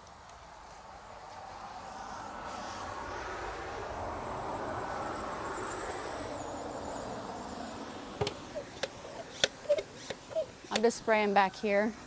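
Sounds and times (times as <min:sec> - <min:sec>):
sharp clicks: 0:08.2 - 0:10.9
garden sprayer hissing: 0:08.2 - 0:12.0.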